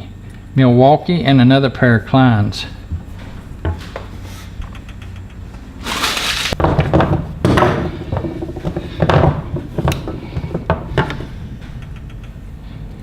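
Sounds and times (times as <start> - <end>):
sharp clicks and knocks: 4.6 - 5.4, 6.5 - 12.4.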